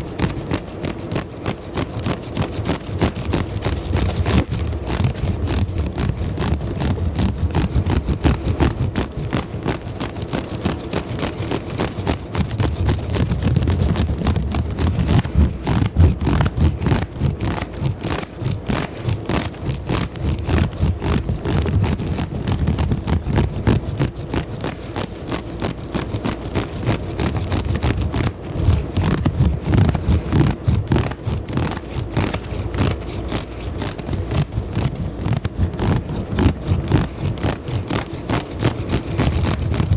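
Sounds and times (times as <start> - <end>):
scratching on a microphone: 0.0 - 39.9.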